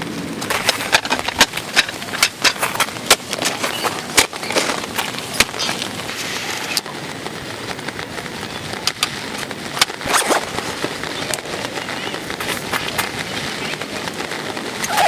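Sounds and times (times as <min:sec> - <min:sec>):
steady rain falling: 0:00.0 - 0:15.0.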